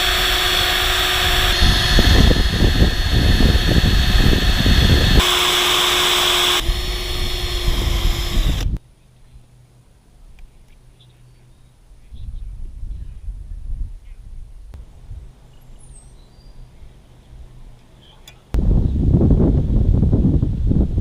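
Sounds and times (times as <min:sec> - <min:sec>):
power drill running: 0:00.0 - 0:08.8.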